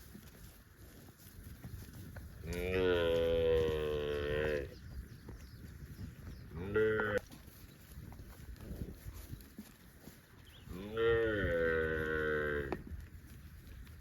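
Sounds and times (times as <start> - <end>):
cow mooing: 2.5 - 4.7, 6.6 - 7.2, 10.8 - 12.8.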